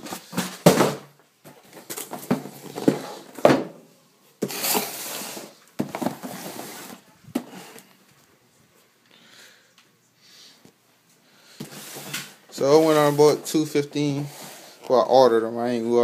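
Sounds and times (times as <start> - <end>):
packaging rustling and scraping: 0.0 - 3.5, 4.4 - 7.8, 11.5 - 15.1.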